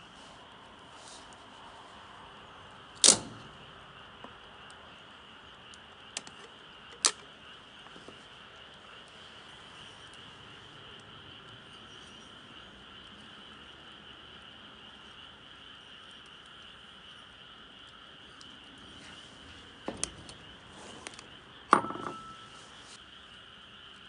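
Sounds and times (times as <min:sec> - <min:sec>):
insects chirring: 0:00.0 - 0:24.0
sharp cracks: 0:03.0 - 0:03.6.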